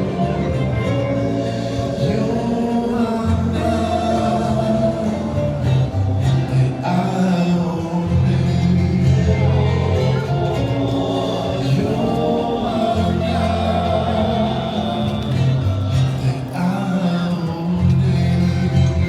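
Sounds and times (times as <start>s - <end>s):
group of voices singing: 0.0s - 19.0s
steady bass: 0.0s - 19.0s.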